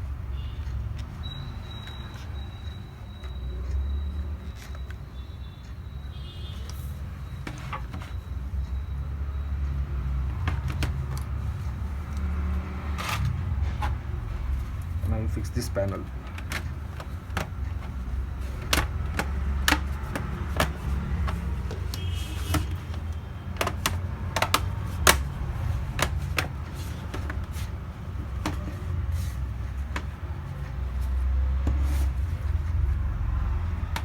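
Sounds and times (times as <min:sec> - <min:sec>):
plastic clicks and taps: 0:15.9 - 0:28.9.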